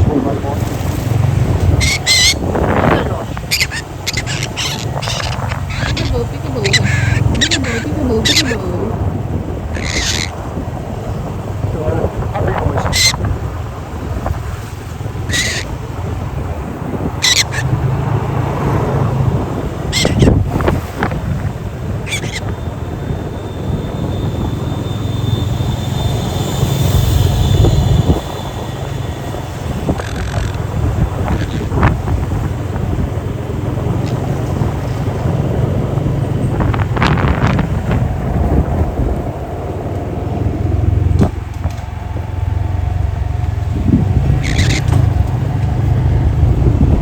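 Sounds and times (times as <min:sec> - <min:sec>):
motorcycle engine rumble: 0:00.0 - 0:47.0
wind rushing over microphone: 0:00.0 - 0:47.0
short high squeal: 0:22.2 - 0:29.3.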